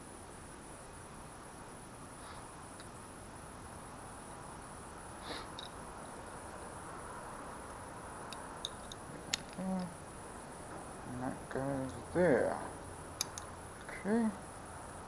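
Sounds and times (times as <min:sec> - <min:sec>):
crickets trilling: 0:00.0 - 0:15.0
light clicks of parts handled: 0:05.5 - 0:05.8, 0:08.3 - 0:10.0, 0:13.2 - 0:14.0.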